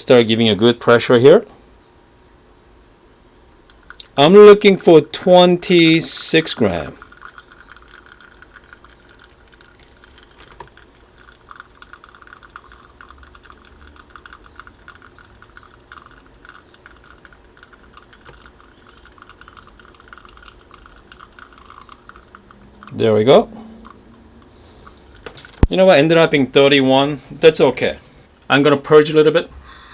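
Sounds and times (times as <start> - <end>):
espresso machine ticking and crackling: 5.7 - 23.0.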